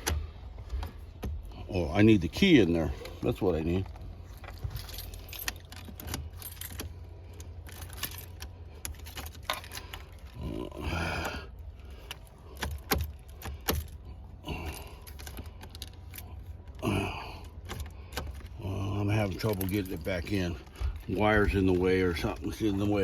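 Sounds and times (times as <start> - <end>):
car keys jangling: 0.0 - 23.0
key clicking in ignition lock: 4.4 - 10.4, 11.9 - 16.8, 17.4 - 18.6.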